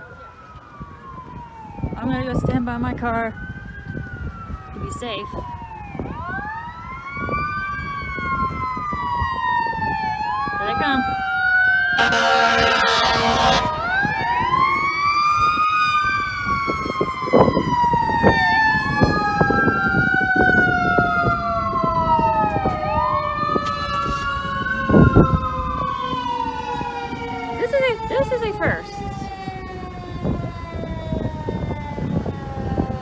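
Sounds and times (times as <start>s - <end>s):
falling siren tone: 0.0s - 33.0s
wailing fire engine siren: 0.0s - 33.0s
air horn blast: 12.0s - 14.1s.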